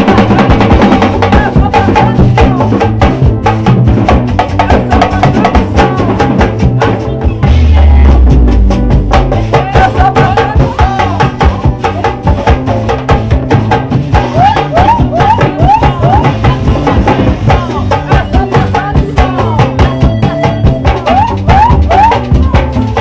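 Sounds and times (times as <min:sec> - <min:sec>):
band playing a driving groove: 0:00.0 - 0:23.0
long low bass note: 0:07.4 - 0:09.4.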